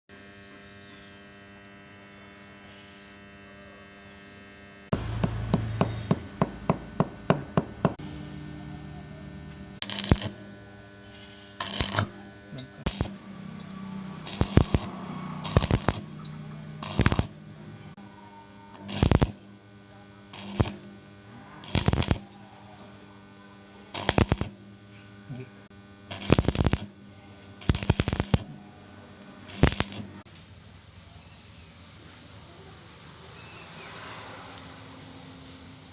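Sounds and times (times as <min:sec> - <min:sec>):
electrical hum: 0:00.1 - 0:32.9
welding arc crackling: 0:09.2 - 0:30.3
faint bird chirps: 0:10.4 - 0:11.6, 0:33.3 - 0:34.1.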